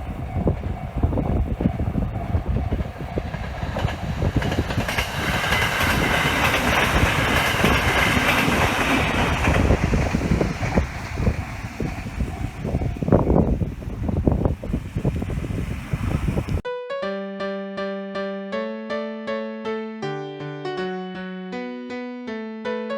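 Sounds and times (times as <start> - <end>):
train wheels clattering on rails: 0.0 - 13.7
wind buffeting microphone: 0.0 - 16.6.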